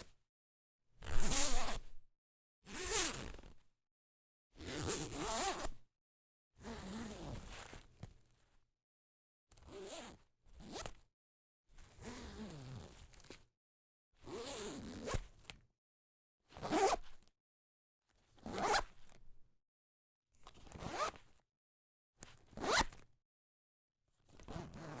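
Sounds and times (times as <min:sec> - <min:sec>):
zippers being zipped: 0:01.0 - 0:02.0, 0:02.7 - 0:03.5, 0:04.6 - 0:05.8, 0:06.6 - 0:07.8, 0:09.7 - 0:11.0, 0:14.3 - 0:15.2, 0:16.6 - 0:17.1, 0:18.4 - 0:18.9, 0:20.7 - 0:21.2, 0:22.6 - 0:23.0, 0:24.3 - 0:25.0.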